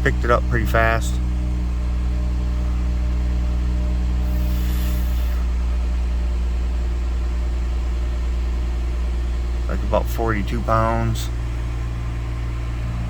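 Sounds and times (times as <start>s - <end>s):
car engine idling: 0.0s - 13.0s
short soft hiss: 4.2s - 5.5s.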